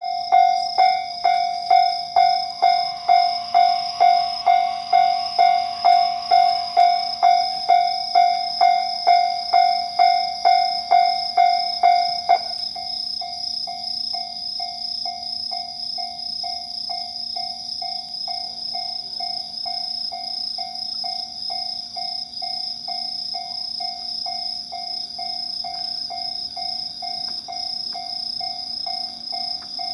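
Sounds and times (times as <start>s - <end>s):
level-crossing electronic bell ringing: 0.0s - 13.0s.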